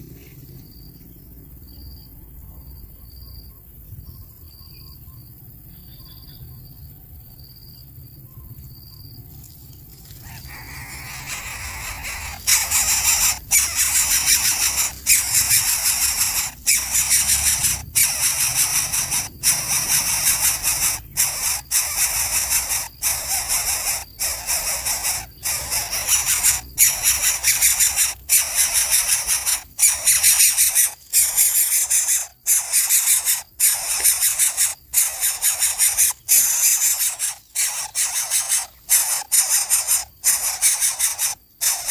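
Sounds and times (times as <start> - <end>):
nestlings begging calls: 10.2 - 41.9.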